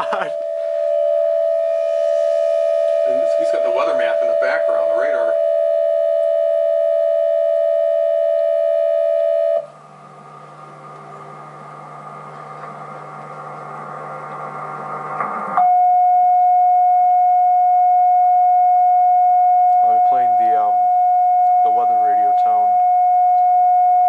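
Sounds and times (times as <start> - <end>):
hiss and low hum: 0.0 - 5.4, 9.3 - 23.6
electronic alert tone: 0.0 - 9.7.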